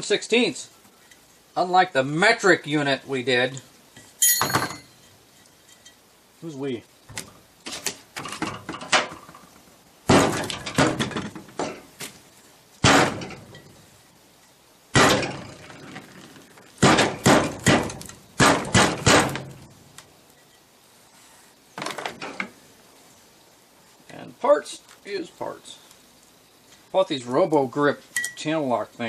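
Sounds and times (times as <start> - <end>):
metal parts clanking when struck: 4.2 - 4.9.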